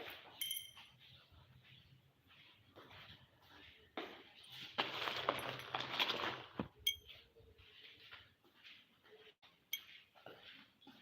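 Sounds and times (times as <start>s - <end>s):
tableware clink: 0.4s - 0.9s.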